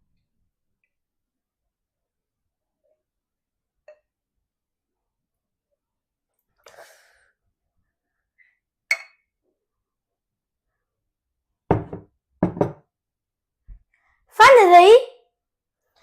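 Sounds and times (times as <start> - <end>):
glass clinking: 8.9 - 9.2
dull knocks on table: 11.7 - 12.8.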